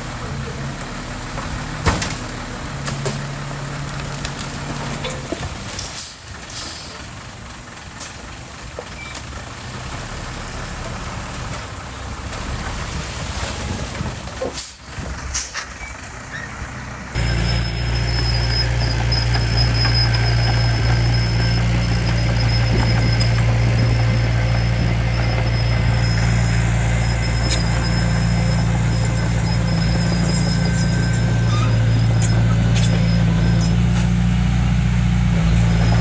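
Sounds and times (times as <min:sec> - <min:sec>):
construction machinery diesel engine: 0:00.0 - 0:36.0.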